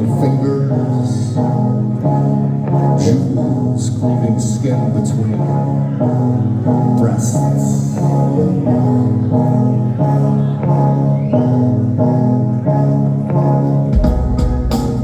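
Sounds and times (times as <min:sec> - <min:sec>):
deep bass: 0:13.8 - 0:15.0
drum hits: 0:14.0 - 0:15.0.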